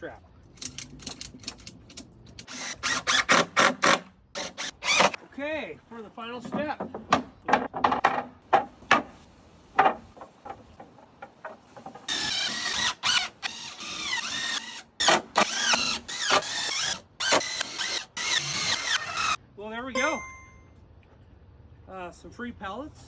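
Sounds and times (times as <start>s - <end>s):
power drill driving screws: 2.4s - 5.2s, 12.1s - 19.4s
sharp knocks: 6.4s - 9.2s, 9.8s - 12.1s.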